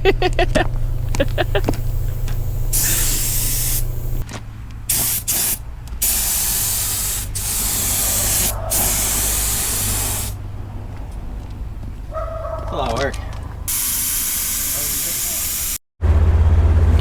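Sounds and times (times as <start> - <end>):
steady low hum: 0.0 - 12.2
spray gun hissing: 0.2 - 4.2, 4.9 - 10.4, 13.7 - 15.8.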